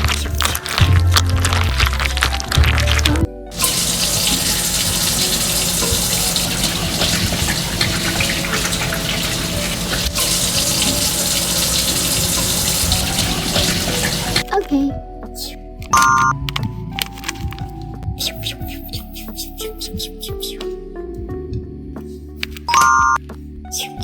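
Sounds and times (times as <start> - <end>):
water running from a tap: 3.5 - 14.4.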